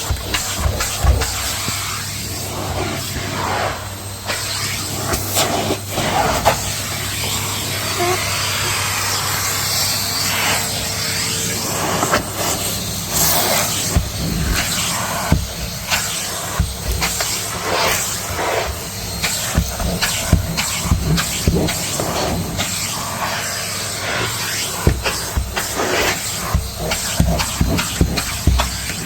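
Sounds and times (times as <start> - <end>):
vacuum cleaner suction hiss: 0.0 - 29.0
nozzle knocking on stairs: 24.9 - 25.9, 26.5 - 29.0.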